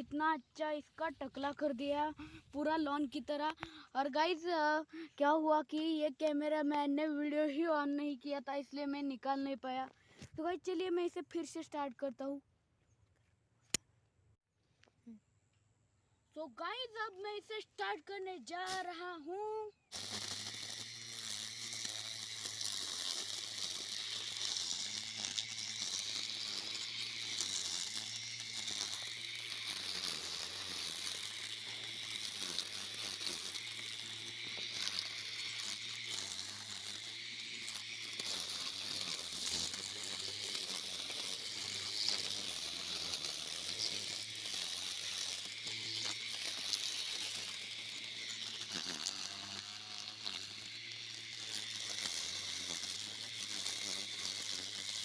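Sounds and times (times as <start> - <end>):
mower blade cutting grass: 0.0 - 11.8, 16.6 - 55.0
electric motor humming: 19.9 - 55.0.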